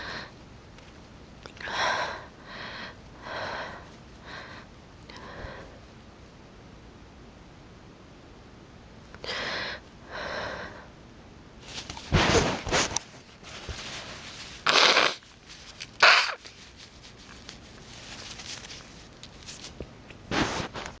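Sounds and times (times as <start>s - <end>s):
person sneezing: 14.6s - 15.2s, 16.0s - 16.4s.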